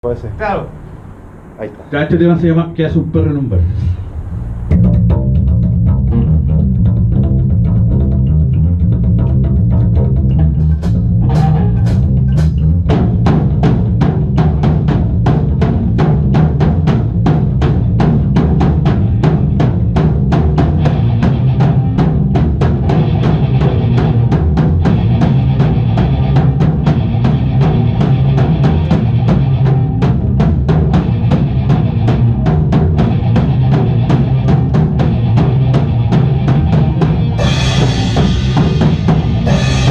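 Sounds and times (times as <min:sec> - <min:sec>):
heavy bass riff: 0:00.7 - 0:39.9
fast cymbal strokes: 0:37.4 - 0:39.9.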